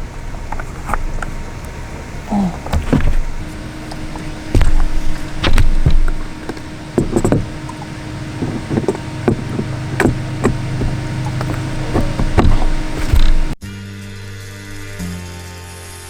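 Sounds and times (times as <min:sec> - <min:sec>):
steady low hum: 0:00.0 - 0:16.0
music: 0:13.6 - 0:16.0.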